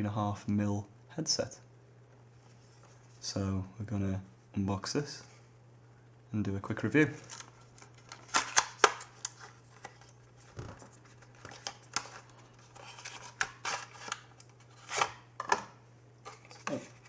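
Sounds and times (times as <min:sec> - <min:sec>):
packaging being opened by hand: 0:07.2 - 0:15.2.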